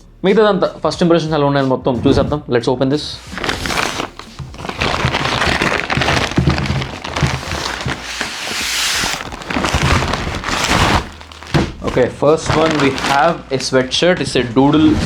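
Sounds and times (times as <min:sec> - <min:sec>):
packaging crackling and ripping: 0:03.0 - 0:13.8.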